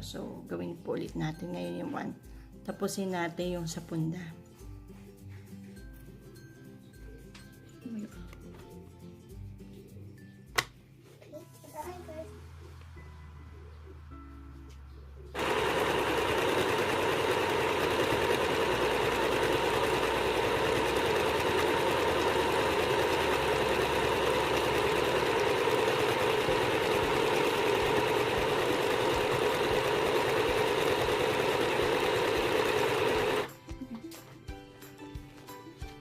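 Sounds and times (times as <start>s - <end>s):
electric sewing machine stitching: 15.4s - 33.5s.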